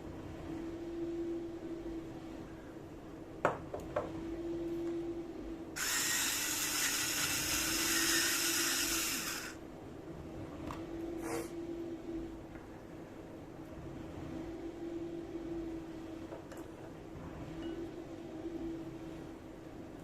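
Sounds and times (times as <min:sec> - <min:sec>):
electric blender running: 0:05.8 - 0:09.6.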